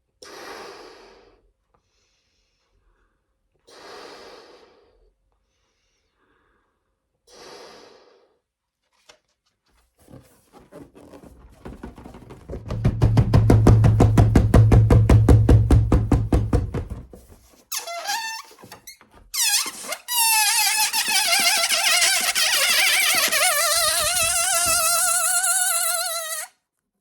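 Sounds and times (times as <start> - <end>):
balloon deflating fluttering buzz: 17.7 - 26.5
breaths blown into balloon: 19.4 - 26.6.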